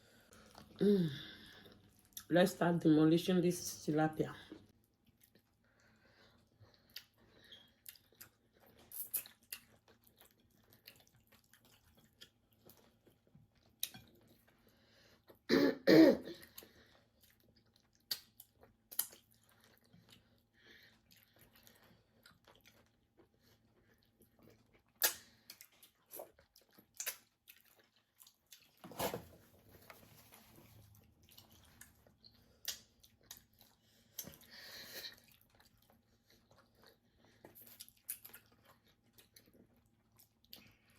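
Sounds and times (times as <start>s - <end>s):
chewing smacks and clicks: 6.8s - 14.6s, 17.2s - 20.3s, 21.0s - 28.8s, 31.2s - 34.5s
person coughing: 15.5s - 16.4s.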